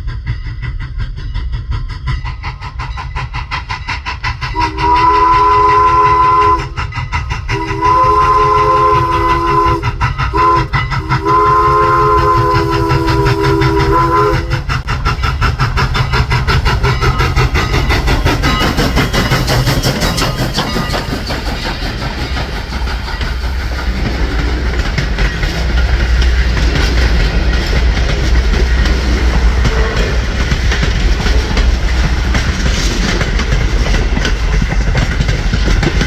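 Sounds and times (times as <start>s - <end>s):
train rumble and clatter: 0.0s - 36.0s
steam locomotive whistle blasts: 4.5s - 6.8s, 7.5s - 14.8s.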